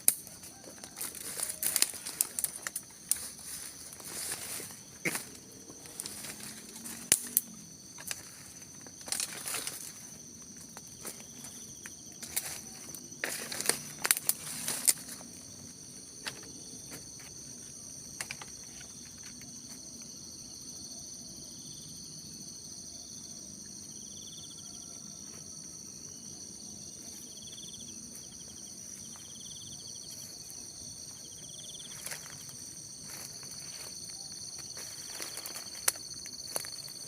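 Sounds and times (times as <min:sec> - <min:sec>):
rustles: 0:00.0 - 0:15.4
insects chorus: 0:00.0 - 0:37.0.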